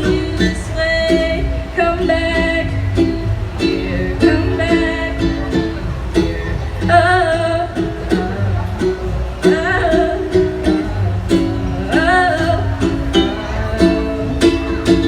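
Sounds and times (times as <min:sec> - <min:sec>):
person singing: 0:00.0 - 0:15.0
strummed string instrument: 0:00.0 - 0:15.0.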